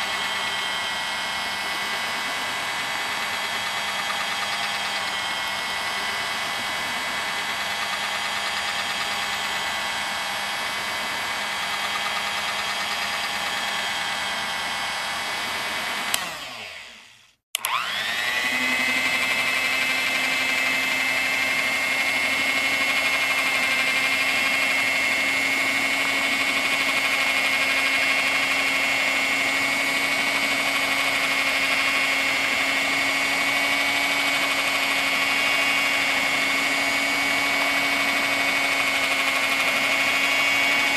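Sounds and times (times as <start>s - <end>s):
electric mixer beating: 0.0s - 40.9s
mixer switch click: 17.6s - 17.8s.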